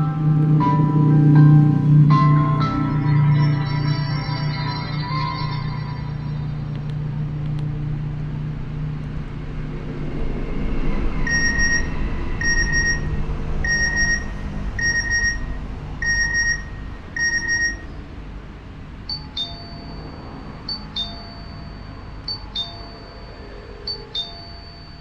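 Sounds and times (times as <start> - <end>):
low drone: 0.0 - 25.0
high ringtone beeps: 2.9 - 6.7, 11.3 - 18.0, 19.1 - 25.0.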